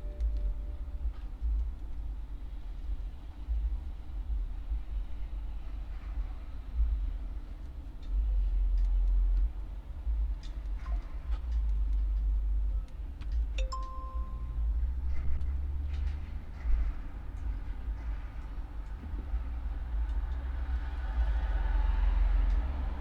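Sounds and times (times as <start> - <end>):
short electronic beep: 13.6 - 14.6.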